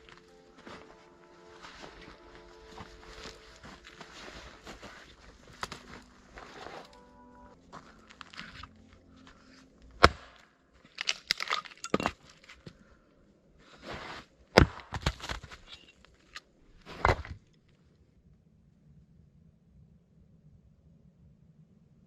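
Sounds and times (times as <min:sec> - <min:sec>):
rustling: 0:00.0 - 0:07.2
sharp cracks and knocks: 0:14.6 - 0:15.6.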